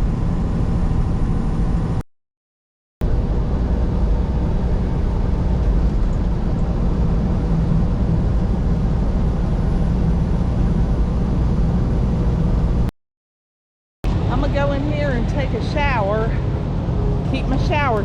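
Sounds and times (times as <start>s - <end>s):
truck engine rumble: 0.0s - 2.0s, 3.0s - 12.9s, 14.0s - 18.0s
road noise: 3.0s - 12.9s, 14.0s - 18.0s.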